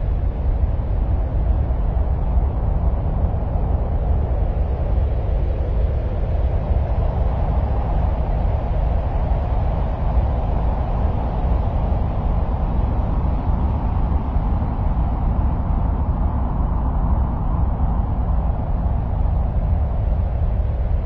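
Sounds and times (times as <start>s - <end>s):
deep dull rumbling noise: 0.0s - 21.0s.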